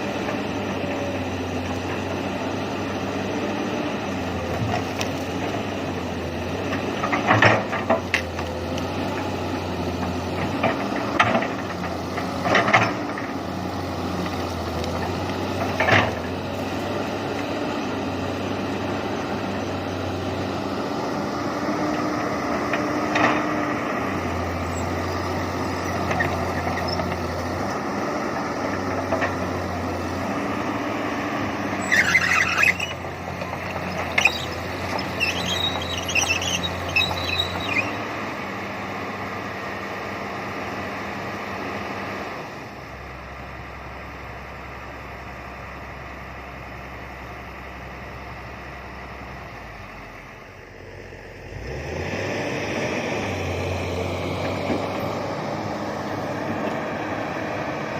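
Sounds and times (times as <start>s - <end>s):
excavator diesel engine running: 0.0s - 57.9s
high squeal: 31.7s - 38.1s
sharp squeaks or knocks: 31.8s - 38.1s.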